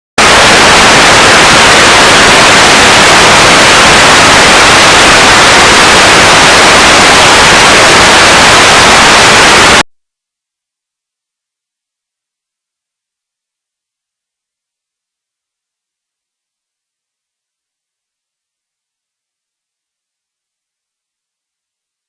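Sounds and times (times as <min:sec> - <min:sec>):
loud static hiss: 0:00.2 - 0:09.8.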